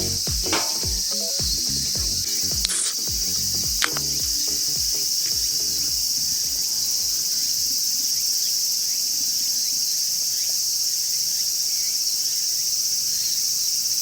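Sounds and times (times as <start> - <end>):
insects chirping: 0.0 - 14.0
short click: 3.8 - 4.1.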